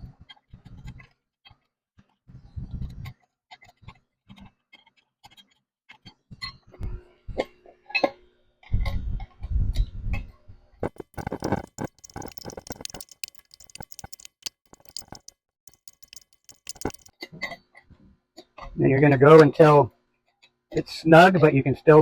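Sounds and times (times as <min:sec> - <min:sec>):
wrench clicking on metal: 0:10.8 - 0:17.1.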